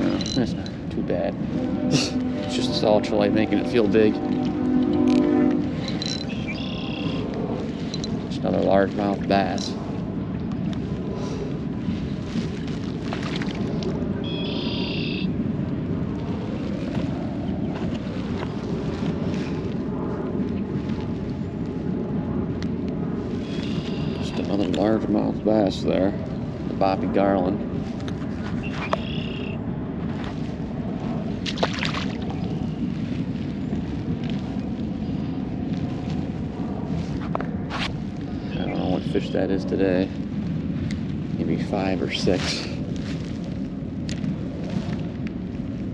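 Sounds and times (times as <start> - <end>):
high-pitched squeal: 0.0 - 7.3
wind rumbling on microphone: 0.0 - 45.9.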